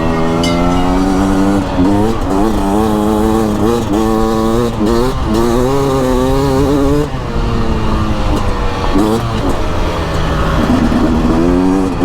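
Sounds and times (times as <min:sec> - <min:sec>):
two-stroke engine revving: 0:00.0 - 0:12.0.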